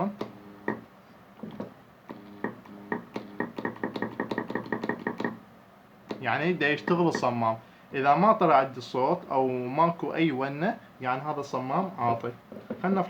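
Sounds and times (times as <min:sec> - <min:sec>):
solenoid valve clicking and humming: 0:00.0 - 0:05.4, 0:06.0 - 0:07.5.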